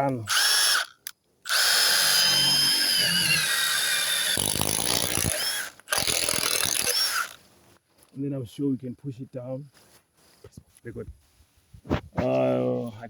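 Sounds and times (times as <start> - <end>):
impact driver drilling into wood: 0.3 - 7.4.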